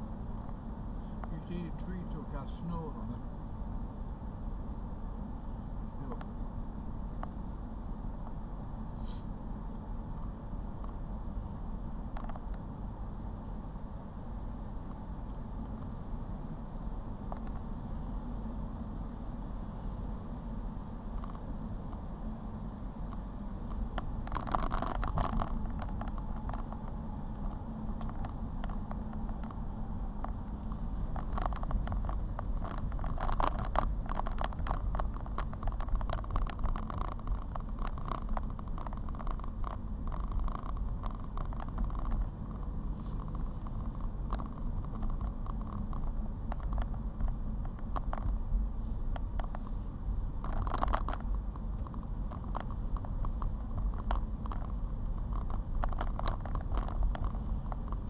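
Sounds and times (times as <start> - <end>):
road rumble from inside car: 0.0 - 58.0
small ticks: 10.8 - 11.0, 12.1 - 12.7, 17.2 - 17.7, 21.1 - 22.1, 23.0 - 58.0.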